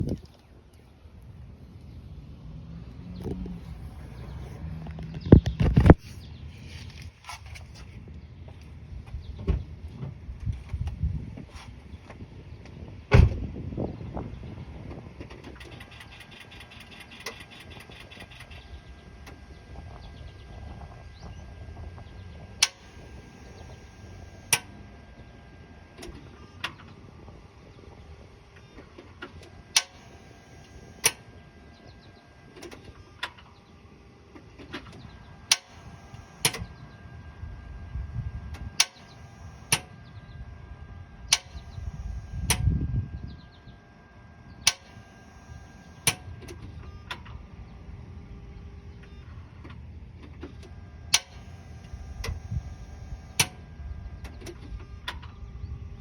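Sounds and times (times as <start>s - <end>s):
brief low engine rumble: 0.0s - 43.9s.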